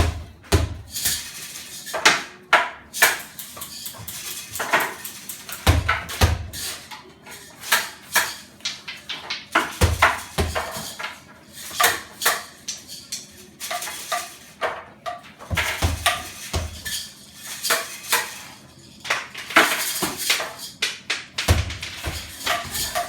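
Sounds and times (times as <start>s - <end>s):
hard objects clinking and knocking: 0.0s - 23.0s.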